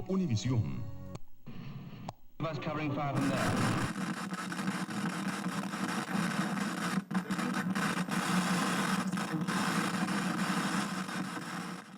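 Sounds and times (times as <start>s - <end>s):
television static hiss: 2.3s - 11.9s.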